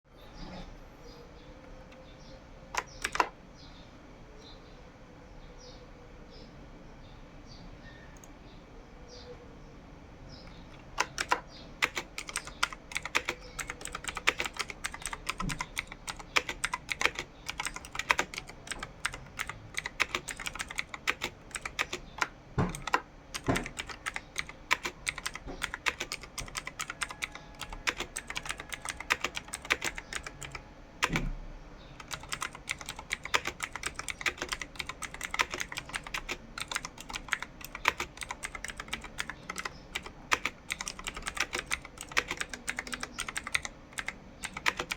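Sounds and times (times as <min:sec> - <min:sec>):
keyboard typing clicks: 0:02.7 - 0:03.4, 0:10.5 - 0:31.3, 0:32.0 - 0:44.9.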